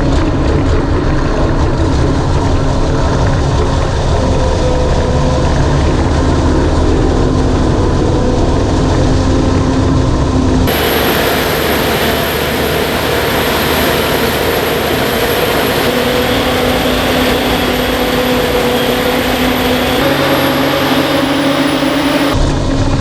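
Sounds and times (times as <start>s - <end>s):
heavy diesel machinery running: 0.0s - 23.0s
thin high whine: 10.7s - 22.4s.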